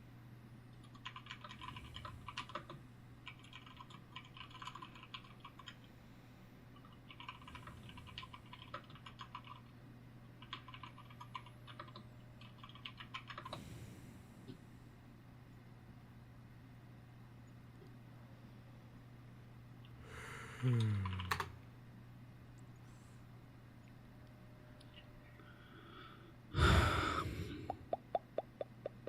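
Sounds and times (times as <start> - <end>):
low steady hum: 0.0 - 29.0
computer keyboard typing: 0.7 - 5.9, 6.8 - 9.7, 10.4 - 13.6, 21.0 - 21.5.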